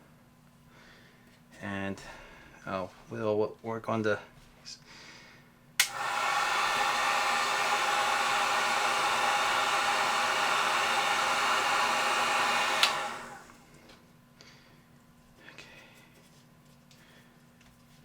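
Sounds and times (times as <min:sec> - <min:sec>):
heat gun switch click: 0:05.8 - 0:07.0, 0:11.8 - 0:13.6
heat gun blower running: 0:05.8 - 0:13.7.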